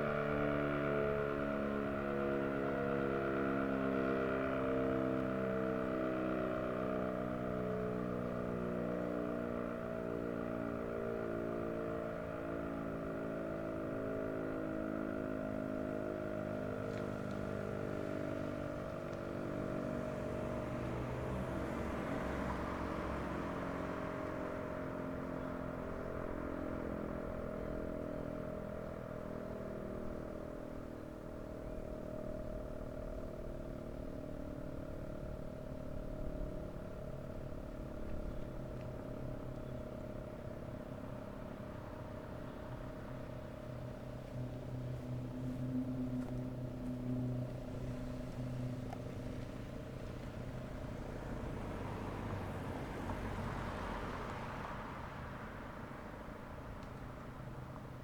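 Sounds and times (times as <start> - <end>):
siren steady tone: 43.6 - 49.5.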